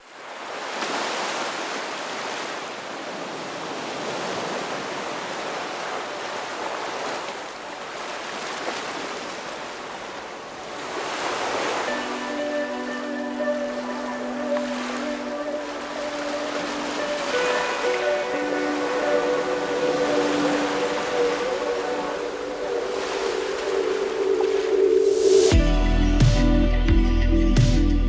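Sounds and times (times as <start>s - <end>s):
waves breaking on a beach: 0.0s - 25.5s
music: 11.9s - 21.8s, 25.5s - 28.0s.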